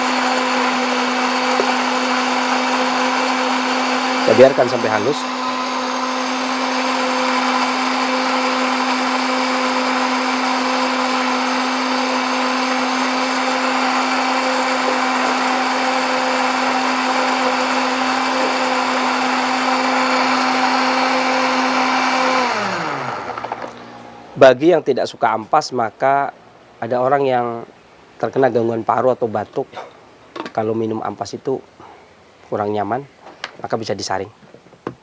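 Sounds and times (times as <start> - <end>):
electric blender running: 0.0 - 24.3.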